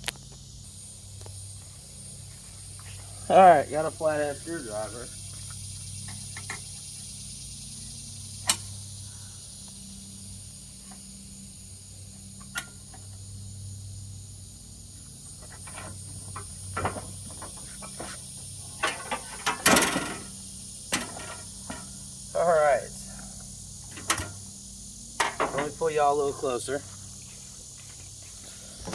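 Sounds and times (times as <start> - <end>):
steady low hum: 0.0 - 28.9.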